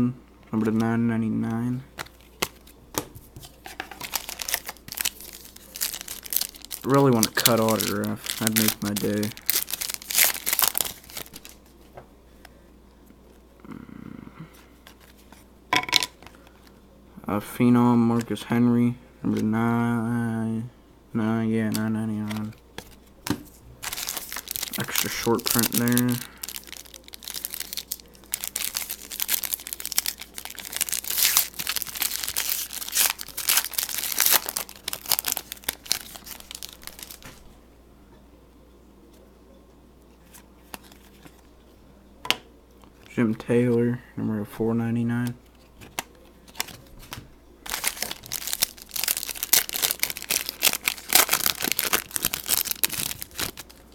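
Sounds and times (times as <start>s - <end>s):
cards or wrapper rustling: 2.0s - 11.8s, 21.6s - 37.5s, 40.3s - 41.5s, 45.5s - 53.9s.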